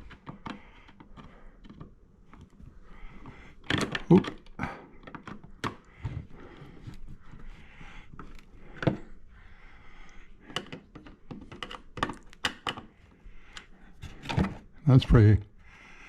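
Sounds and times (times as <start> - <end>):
plastic clicks and knocks: 0.0 - 2.6, 3.2 - 6.3, 10.5 - 14.6.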